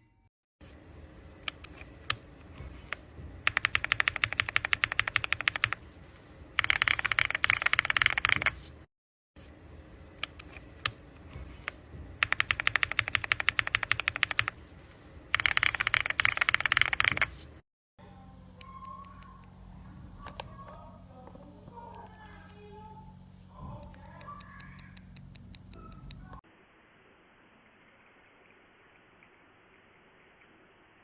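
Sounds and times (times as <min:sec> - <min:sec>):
mechanical keyboard clacks: 0:02.9 - 0:05.8, 0:06.6 - 0:08.6, 0:11.7 - 0:14.5, 0:15.3 - 0:17.3.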